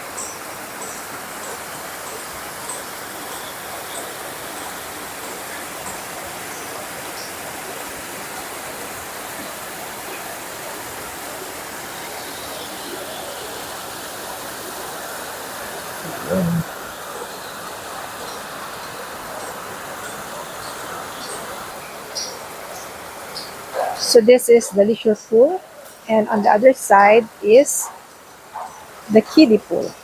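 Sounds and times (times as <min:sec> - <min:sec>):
water rushing: 0:00.0 - 0:30.0.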